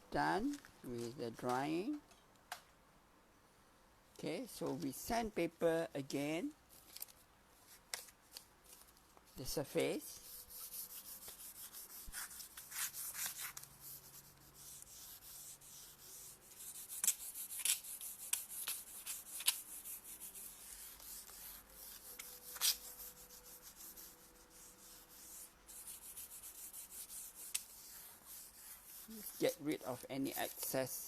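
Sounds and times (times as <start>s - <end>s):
sandpaper rubbing on wood: 9.8s - 31.0s.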